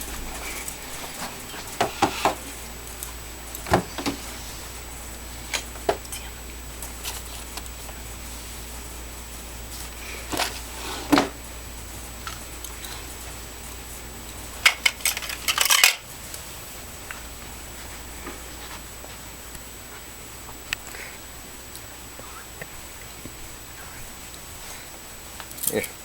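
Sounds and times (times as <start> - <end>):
metal handcuffs clinking: 25.5 - 26.0.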